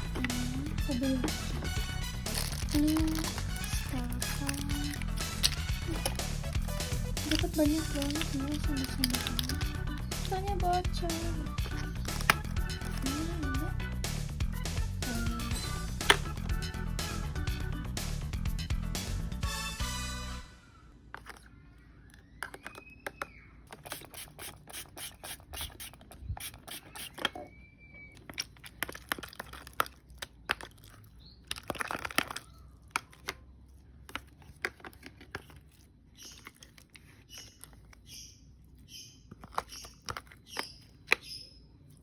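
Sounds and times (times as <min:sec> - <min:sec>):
packaging tearing and crinkling: 0:00.0 - 0:06.3, 0:07.2 - 0:09.7, 0:11.6 - 0:13.2.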